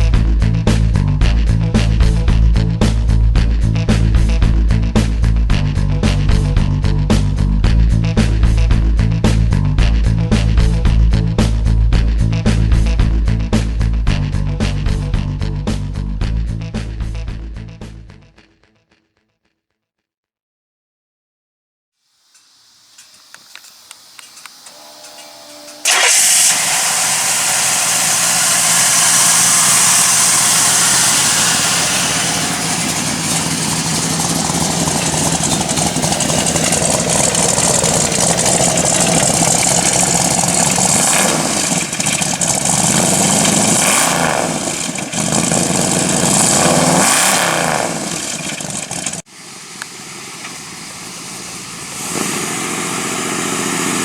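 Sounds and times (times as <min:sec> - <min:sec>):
car engine starting and revving: 0:23.0 - 0:54.0.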